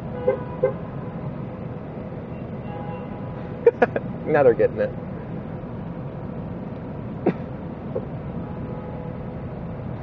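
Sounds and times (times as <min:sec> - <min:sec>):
distant car horns: 0:00.0 - 0:00.8, 0:02.3 - 0:03.5, 0:08.4 - 0:09.3
traffic rumble in tunnel: 0:00.0 - 0:10.0.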